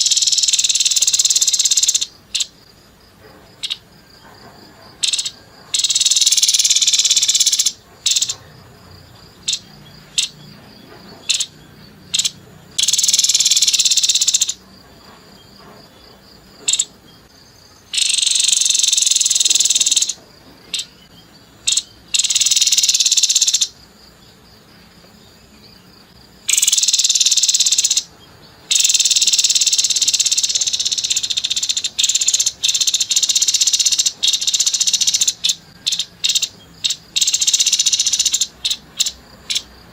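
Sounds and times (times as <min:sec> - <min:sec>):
bird giving harsh rapid trills: 0:00.0 - 0:02.6, 0:05.0 - 0:08.6, 0:09.3 - 0:10.4, 0:11.2 - 0:14.6, 0:17.8 - 0:21.0, 0:21.6 - 0:23.8, 0:26.4 - 0:39.7.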